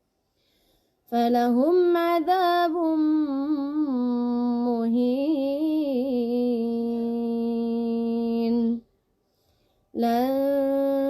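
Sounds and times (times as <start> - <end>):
woman reciting melodically: 10.0 - 11.0.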